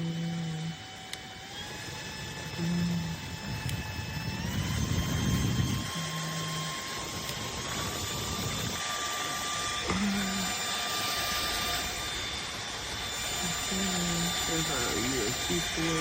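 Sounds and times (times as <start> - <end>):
handheld fan whining: 0.0 - 16.0.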